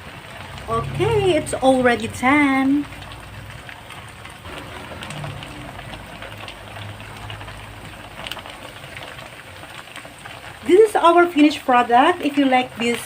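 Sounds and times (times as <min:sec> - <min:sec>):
food sizzling in a frying pan: 0:00.0 - 0:13.0
low hum: 0:02.8 - 0:10.0.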